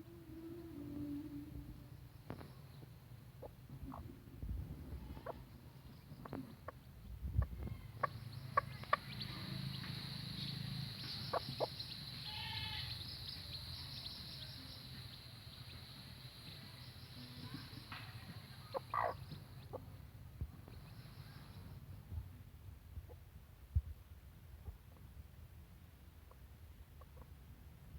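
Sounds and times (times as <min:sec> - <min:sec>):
bleat-like animal call: 0:12.2 - 0:13.0.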